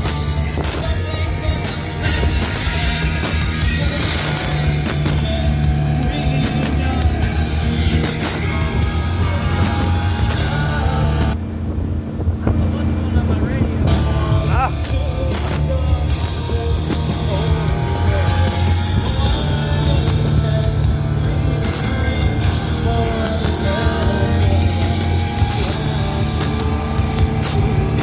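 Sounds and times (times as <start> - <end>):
person singing: 0.0 - 11.4, 13.9 - 28.0
rock guitar: 0.0 - 11.4, 13.9 - 28.0.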